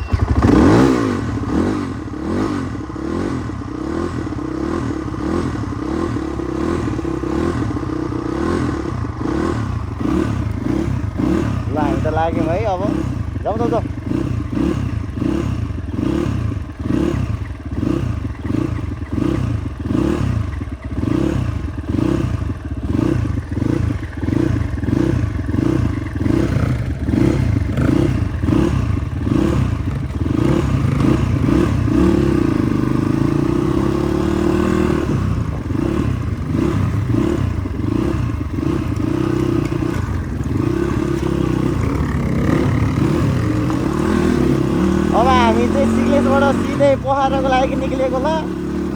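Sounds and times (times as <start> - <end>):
motorcycle engine running: 0.0 - 48.9
rattles over bumps: 38.3 - 48.3.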